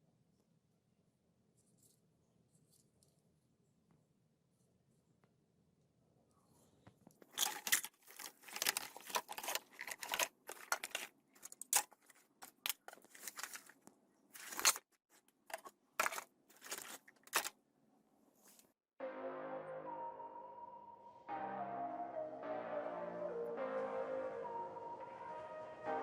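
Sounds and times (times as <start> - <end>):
plastic phone parts crackling: 7.2 - 17.6.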